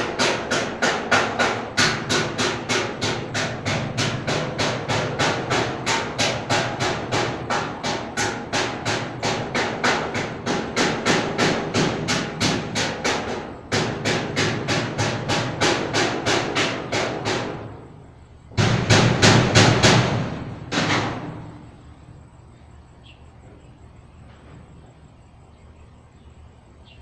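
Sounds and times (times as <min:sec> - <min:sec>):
rapid even knocking: 0:00.0 - 0:17.8, 0:18.5 - 0:21.5.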